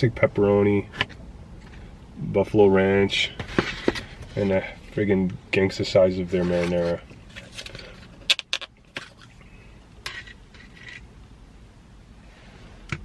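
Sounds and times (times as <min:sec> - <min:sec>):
light scraping of packaging: 0:03.4 - 0:05.0, 0:06.3 - 0:08.3, 0:10.1 - 0:11.1.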